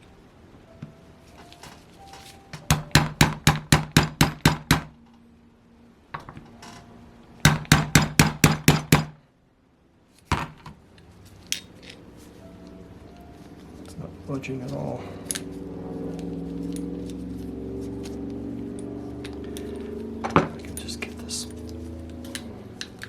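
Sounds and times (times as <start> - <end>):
hammer tapping metal punch: 2.6 - 4.9, 7.5 - 9.2.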